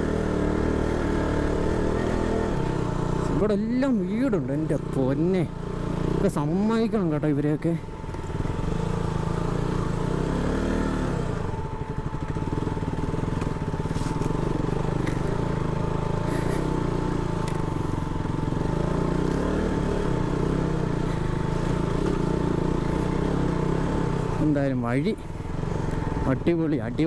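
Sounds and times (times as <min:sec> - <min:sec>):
motorcycle engine running: 0:00.0 - 0:27.0
stones clicking under tyres: 0:17.4 - 0:17.7.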